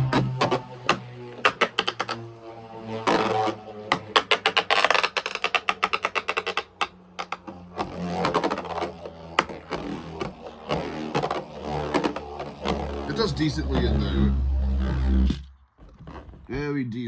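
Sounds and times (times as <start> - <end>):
spinning top clicking and clattering: 0.1 - 12.8
spinning top whirring hum: 6.9 - 15.6.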